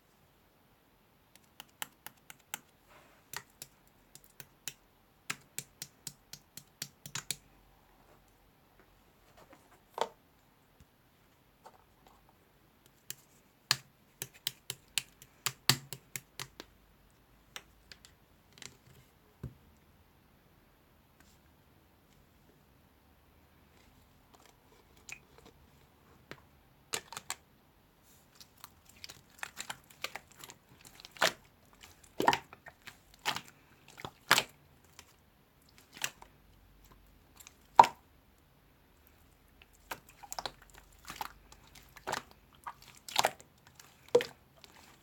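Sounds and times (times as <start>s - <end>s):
sharp clicks and taps: 1.3s - 7.5s.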